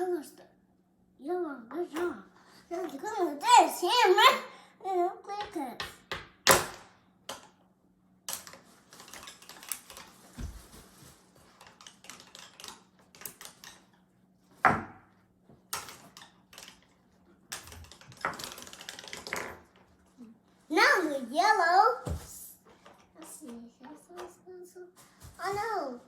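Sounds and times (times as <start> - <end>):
plastic toy pieces clattering: 8.3 - 10.2, 11.4 - 13.9, 15.7 - 19.9.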